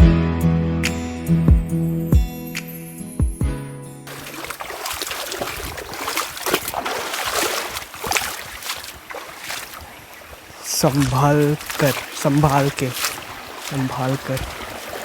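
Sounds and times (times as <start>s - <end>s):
music track: 0.0s - 4.2s
water splashing and trickling: 4.1s - 15.0s.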